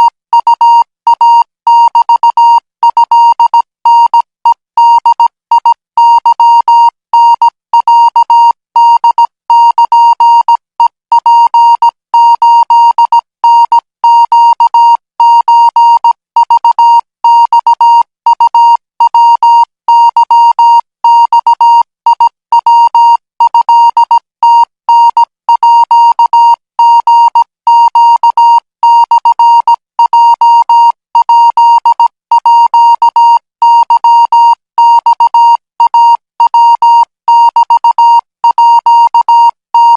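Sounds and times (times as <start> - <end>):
morse code tone: 0.0 - 39.9.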